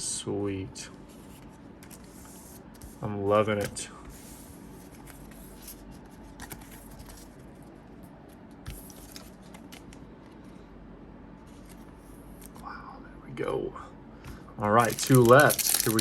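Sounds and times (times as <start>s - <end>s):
trading cards rustling and clicking: 4.8s - 7.5s, 8.6s - 10.6s, 14.8s - 16.0s.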